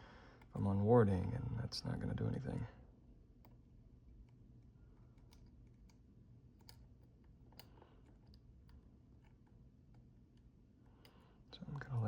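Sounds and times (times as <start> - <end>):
faint metallic lock picking clicks: 4.2 - 11.3.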